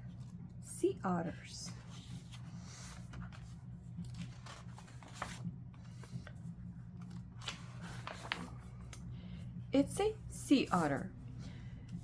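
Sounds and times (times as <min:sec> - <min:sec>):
steady low hum: 0:00.0 - 0:12.0
book pages rustling and turning: 0:01.3 - 0:09.1.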